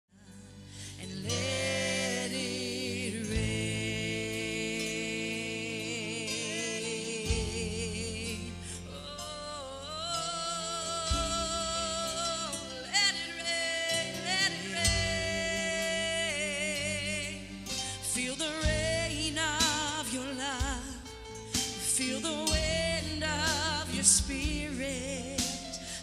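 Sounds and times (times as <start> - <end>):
person singing with vibrato: 0.1 - 26.0
sustained instrumental chords: 0.2 - 26.0.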